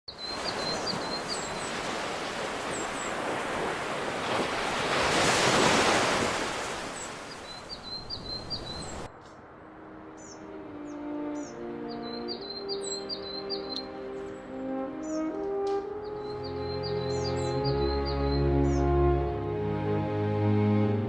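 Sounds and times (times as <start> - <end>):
small birds chirping: 0.1 - 4.4, 6.7 - 9.4, 10.0 - 19.2
ocean wave breaking: 0.2 - 19.1.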